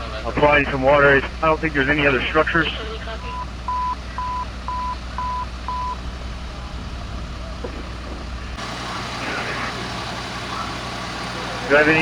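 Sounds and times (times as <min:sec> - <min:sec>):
truck engine idling: 0:00.0 - 0:12.0
reversing alarm beeping: 0:03.1 - 0:06.0.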